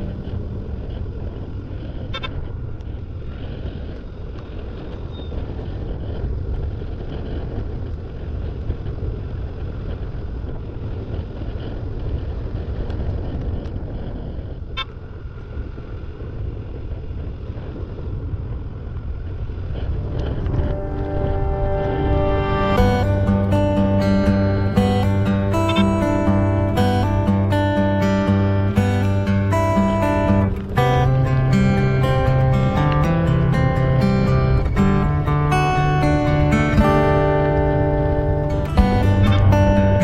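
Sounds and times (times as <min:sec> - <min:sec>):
motorcycle engine rumble: 0:13.1 - 0:40.0.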